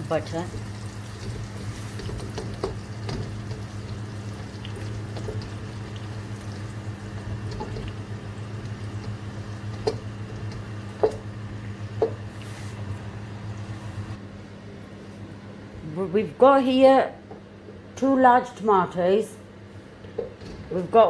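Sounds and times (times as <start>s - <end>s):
butter sizzling in a pan: 0.0s - 12.3s
steady low hum: 0.0s - 21.0s.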